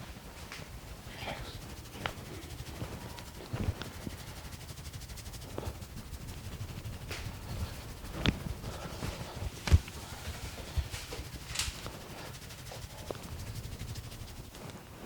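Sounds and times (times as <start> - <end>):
low steady rumble: 0.0 - 15.0
hands slapping head and neck: 7.0 - 12.0.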